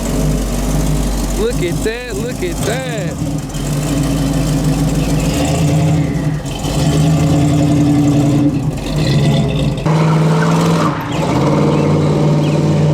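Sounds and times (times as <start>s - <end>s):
car engine running loud: 0.0s - 12.9s.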